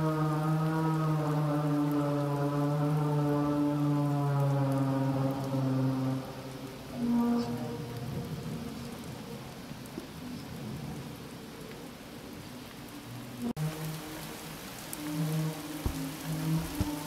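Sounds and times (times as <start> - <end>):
low horn-like drone: 0.0 - 11.2, 12.8 - 17.0
rain hissing: 0.0 - 17.0.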